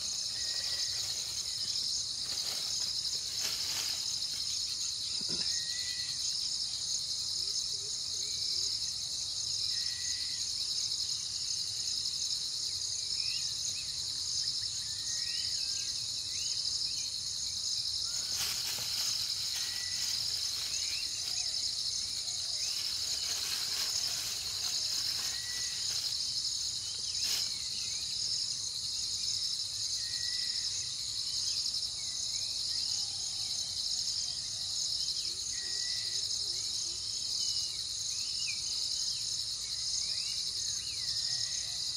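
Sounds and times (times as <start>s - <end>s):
insects shrilling: 0.0s - 6.2s, 17.5s - 28.6s.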